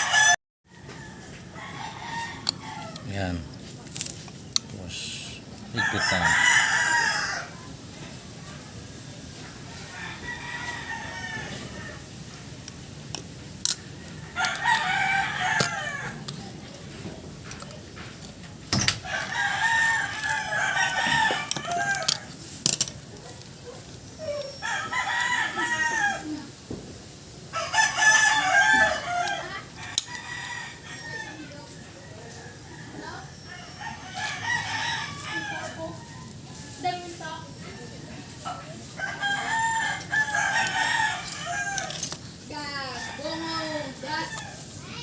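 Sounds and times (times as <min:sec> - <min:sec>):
roosters crowing: 0:00.0 - 0:45.0.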